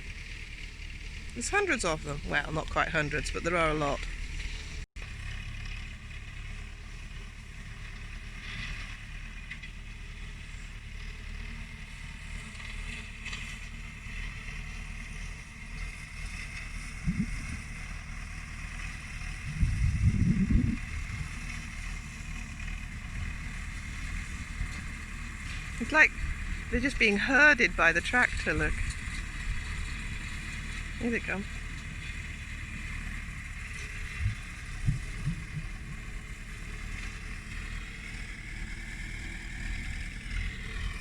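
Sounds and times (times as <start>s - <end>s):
tractor engine running: 0.0s - 41.0s
low rumble: 16.9s - 18.1s, 19.2s - 21.6s, 34.0s - 36.8s.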